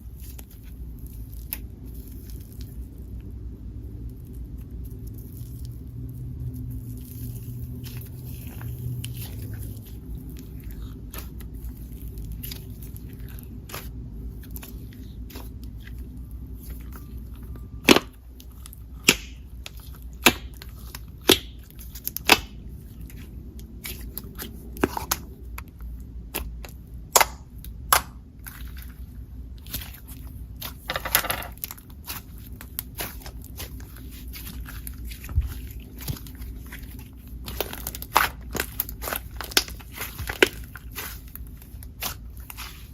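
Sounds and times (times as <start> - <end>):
crackly slime squish: 0.0 - 42.9
slime popping and crackling: 29.6 - 42.9.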